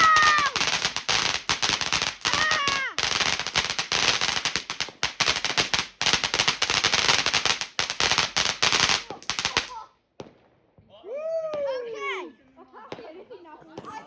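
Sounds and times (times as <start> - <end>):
firework barrage crackling bangs: 0.0 - 10.6.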